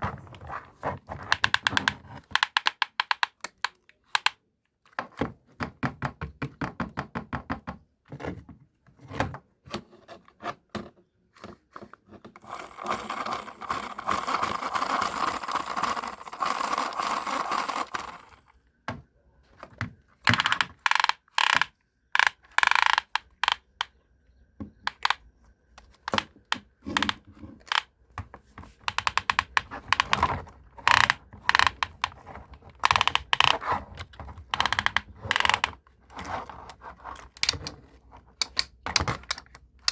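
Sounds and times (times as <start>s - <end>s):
plastic toy clicks and knocks: 1.3s - 4.4s, 12.5s - 18.5s, 20.2s - 24.0s, 24.8s - 25.2s, 25.8s - 27.9s, 28.6s - 35.9s, 37.2s - 37.8s, 38.4s - 39.9s
plastic toy rattling: 12.5s - 18.5s, 20.2s - 23.9s, 24.9s - 25.2s, 26.9s - 27.9s, 28.9s - 35.8s.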